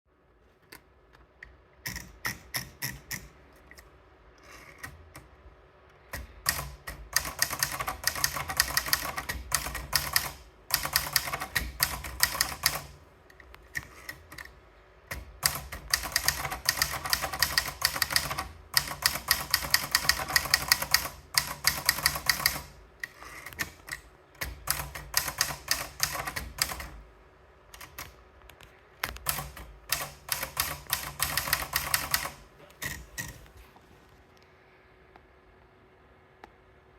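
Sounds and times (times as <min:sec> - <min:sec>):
typewriter keystrokes: 0:06.1 - 0:13.0, 0:15.1 - 0:27.0, 0:27.7 - 0:28.2, 0:29.0 - 0:33.4.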